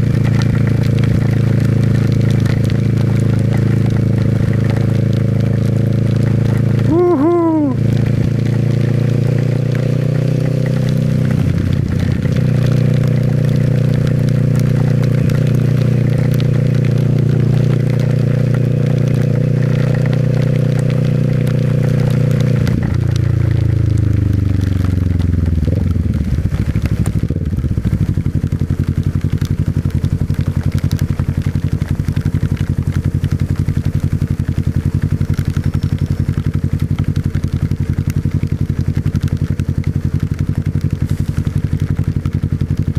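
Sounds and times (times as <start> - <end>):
motorcycle engine running: 0.0 - 42.9.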